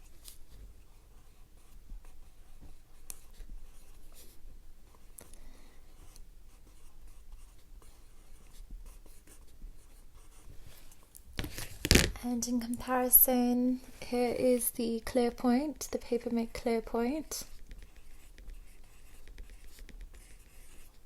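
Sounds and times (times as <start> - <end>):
pencil scratching on paper: 6.0 - 10.8, 17.2 - 21.0.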